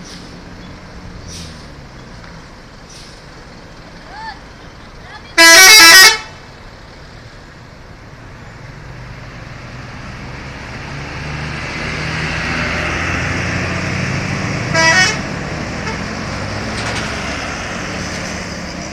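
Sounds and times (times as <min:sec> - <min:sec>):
bus engine running: 0:00.0 - 0:18.9
musical bus horn: 0:05.4 - 0:06.4, 0:14.7 - 0:16.1.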